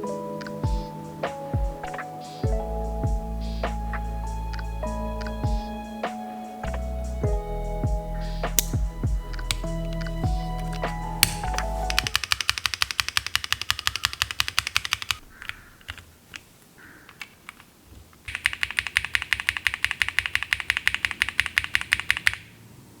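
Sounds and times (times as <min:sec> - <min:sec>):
mechanical keyboard keys clacking: 0:09.4 - 0:16.4, 0:17.1 - 0:22.5.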